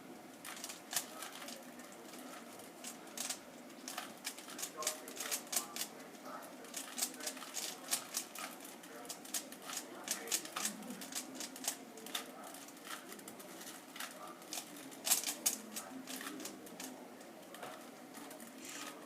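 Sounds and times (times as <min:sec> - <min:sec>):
plastic puzzle cubes clicking: 0:06.6 - 0:13.0, 0:13.6 - 0:16.9.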